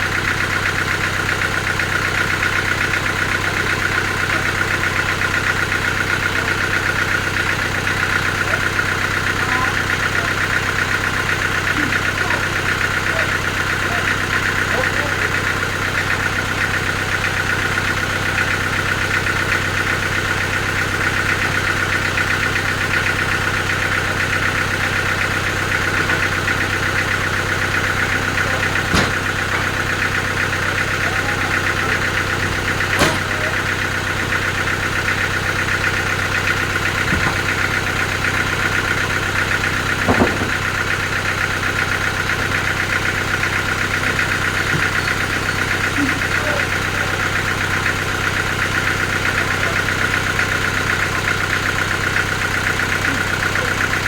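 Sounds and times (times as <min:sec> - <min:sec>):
sawmill machinery humming: 0:00.0 - 0:54.0
sharp knocks: 0:28.8 - 0:29.8, 0:31.9 - 0:33.6, 0:39.8 - 0:40.9.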